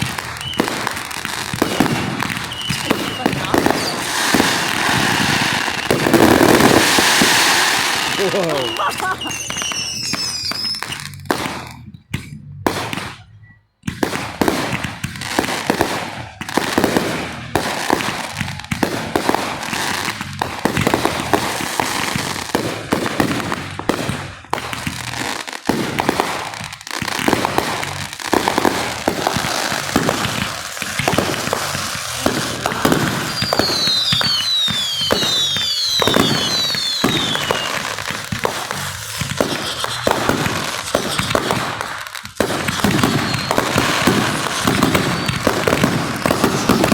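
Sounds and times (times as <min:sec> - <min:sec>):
falling firework whistles: 0:00.0 - 0:11.8, 0:26.0 - 0:46.9
fireworks bangs and crackling: 0:00.0 - 0:46.9.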